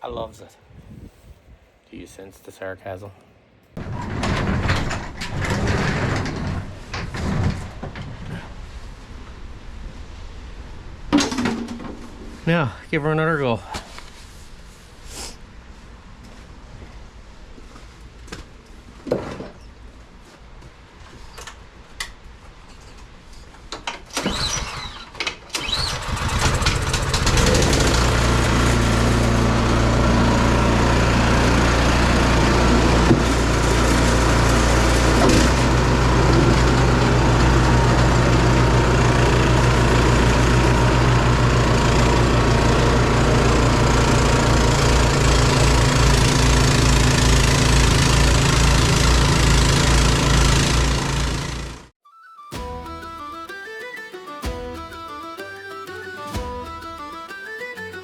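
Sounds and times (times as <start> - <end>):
snowblower engine running: 25.6 - 51.9, 54.4 - 58.0.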